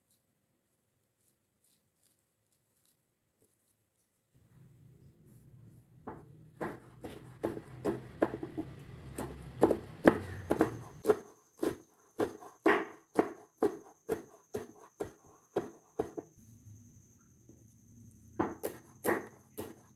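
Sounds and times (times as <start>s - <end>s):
knife chopping on wooden board: 6.1s - 16.4s, 18.4s - 19.9s.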